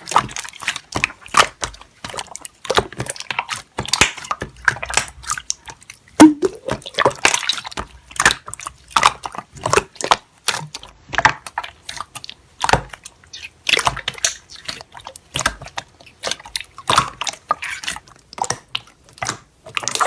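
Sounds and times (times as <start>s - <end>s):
wet smacking and clicking: 0.0s - 20.0s.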